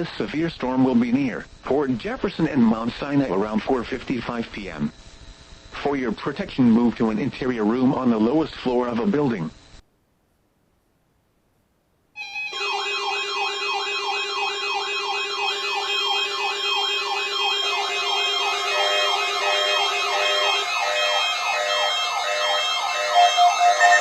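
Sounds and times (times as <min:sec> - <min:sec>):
electronic siren wailing: 0:12.2 - 0:24.0.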